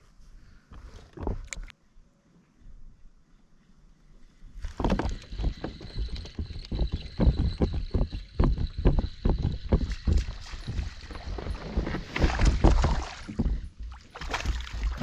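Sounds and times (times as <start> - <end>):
water splashing: 9.8 - 15.0.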